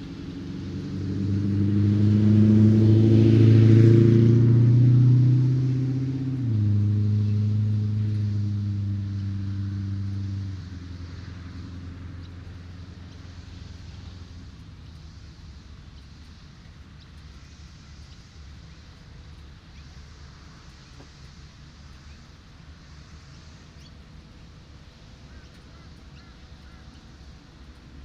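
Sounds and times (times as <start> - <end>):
vehicle engine passing: 0.0 - 16.4
tyre hiss: 5.0 - 28.0.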